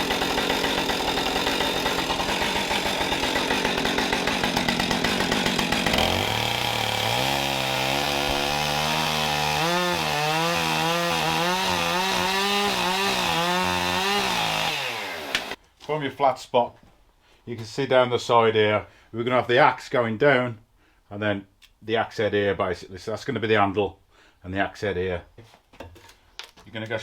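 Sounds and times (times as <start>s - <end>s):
chainsaw cutting wood: 0.0s - 15.6s.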